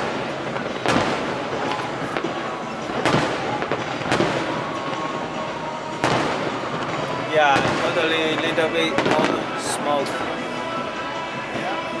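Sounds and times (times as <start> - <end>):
fireworks bursting with bangs: 0.0 - 12.0
steady wash of noise: 0.0 - 12.0.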